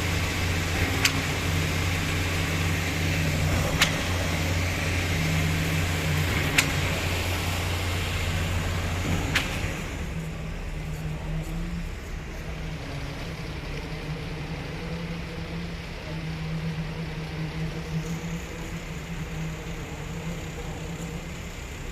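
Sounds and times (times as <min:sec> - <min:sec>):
machinery hum: 0:00.0 - 0:21.9.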